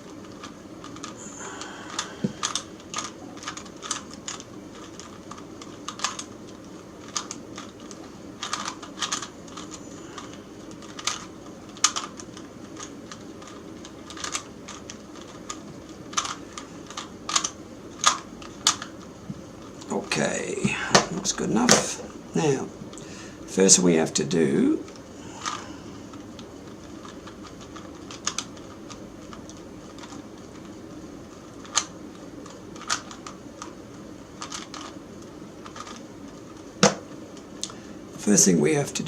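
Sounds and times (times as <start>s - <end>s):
puzzle cube twisting clicks: 0.1s - 1.2s, 1.9s - 19.0s, 24.9s - 30.8s, 31.4s - 33.8s, 34.4s - 35.0s, 35.6s - 37.4s.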